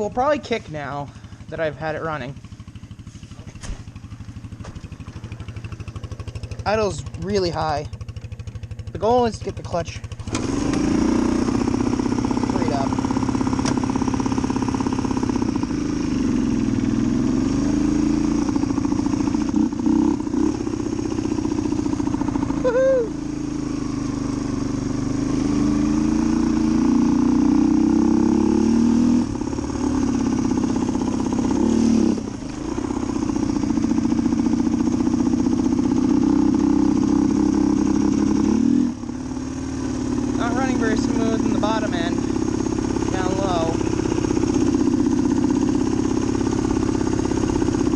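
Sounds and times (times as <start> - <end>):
motorcycle engine running: 0.0 - 47.9
rider whooping: 22.5 - 23.3.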